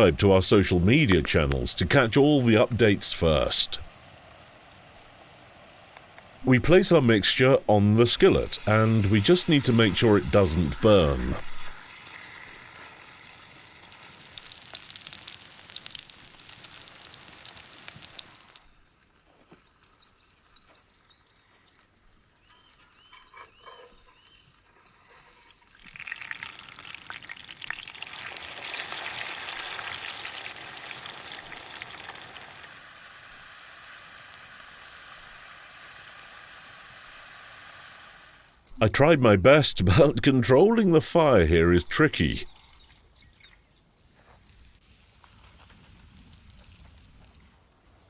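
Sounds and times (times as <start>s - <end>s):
batter sizzling in skillet: 7.9s - 21.3s, 25.8s - 38.8s, 42.5s - 47.6s.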